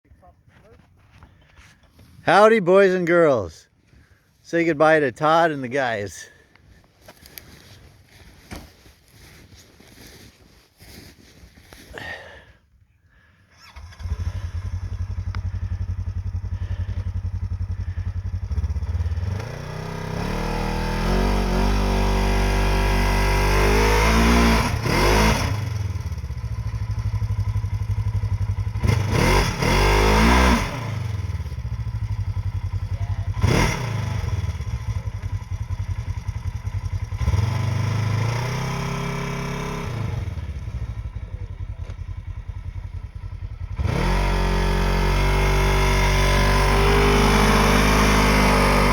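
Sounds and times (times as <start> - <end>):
snowmobile engine revving: 13.6 - 48.9.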